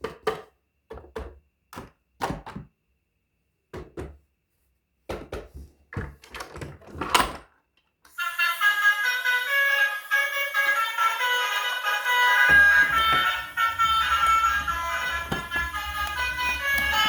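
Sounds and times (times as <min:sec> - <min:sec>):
knocks and thunks: 0:12.5 - 0:17.0.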